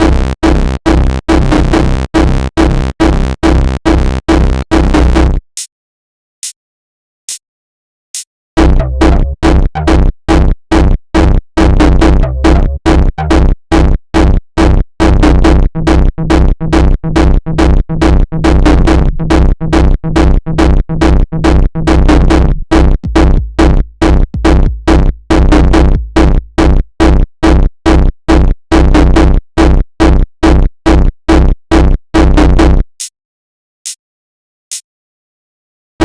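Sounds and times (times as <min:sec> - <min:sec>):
electronic dance beat with synth: 0:23.0 - 0:26.3.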